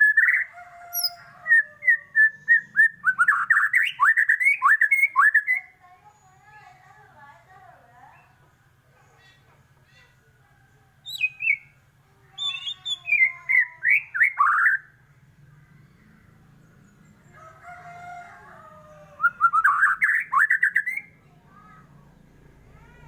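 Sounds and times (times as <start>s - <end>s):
bird singing varied whistles: 0.0s - 5.7s, 11.0s - 11.7s, 12.4s - 14.9s, 19.2s - 21.1s.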